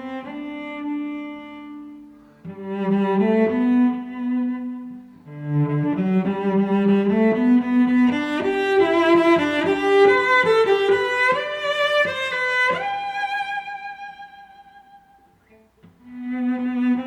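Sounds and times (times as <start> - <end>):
bowed strings melody: 0.0 - 17.0.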